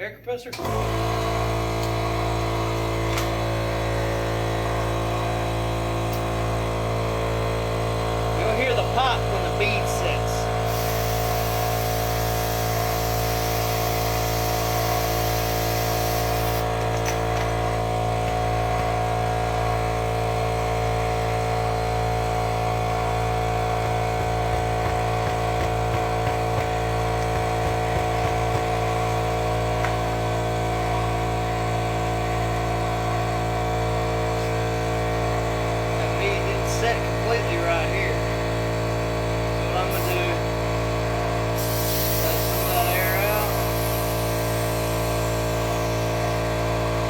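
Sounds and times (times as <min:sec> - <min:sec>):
air compressor motor running: 0:00.5 - 0:47.0
high hiss of air: 0:10.7 - 0:16.7, 0:41.6 - 0:46.4.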